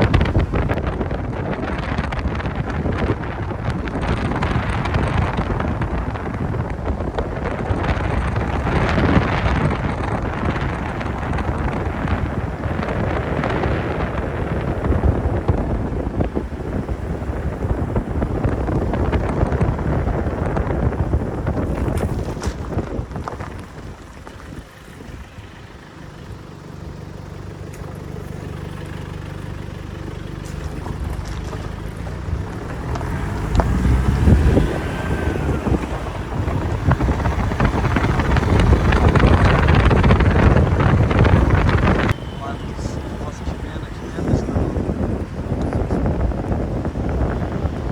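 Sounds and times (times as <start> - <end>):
wind buffeting microphone: 0.0 - 47.9.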